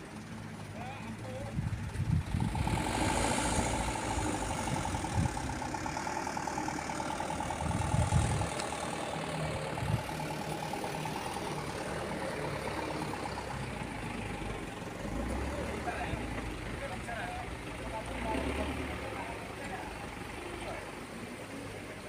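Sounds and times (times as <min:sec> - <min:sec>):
engine idling: 0:00.0 - 0:22.0.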